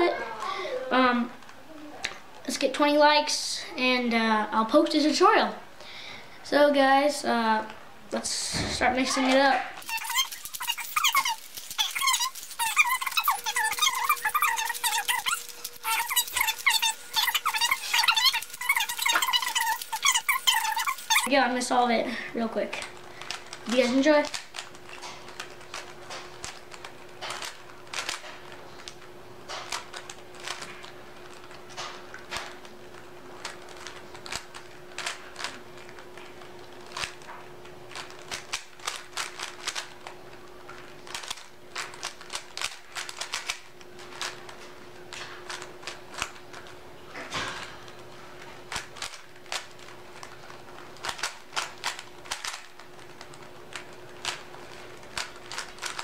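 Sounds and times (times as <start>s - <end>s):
steady hum: 7.6s - 56.0s
puzzle cube plastic clicking: 9.8s - 21.3s, 22.7s - 46.8s, 47.4s - 56.0s.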